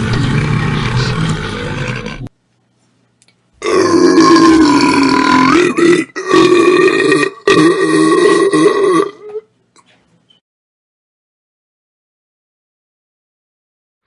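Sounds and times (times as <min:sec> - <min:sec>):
loud human burps: 0:03.6 - 0:09.5.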